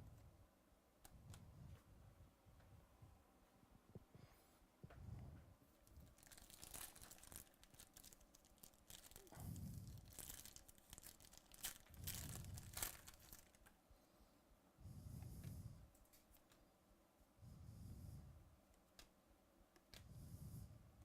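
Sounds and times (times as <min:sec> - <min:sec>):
foil wrapper tearing and crinkling: 0:06.0 - 0:13.7.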